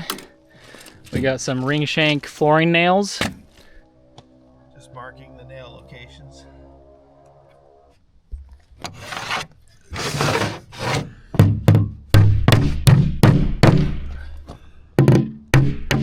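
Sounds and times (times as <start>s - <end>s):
scraping rubs: 8.8s - 11.2s.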